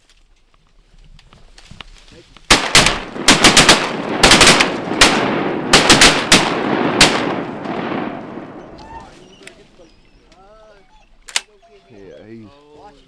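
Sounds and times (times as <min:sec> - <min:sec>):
gunshot echo: 0:02.5 - 0:08.7.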